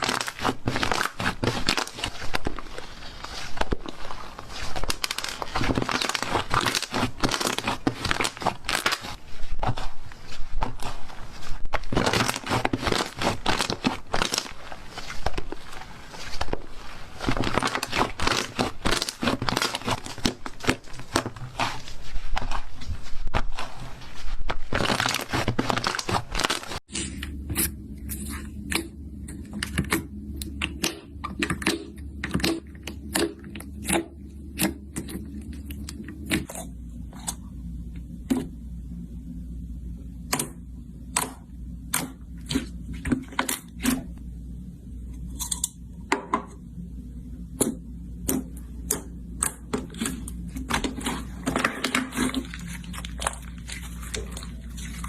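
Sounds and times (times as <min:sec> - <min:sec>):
low steady hum: 0:00.0 - 0:55.0.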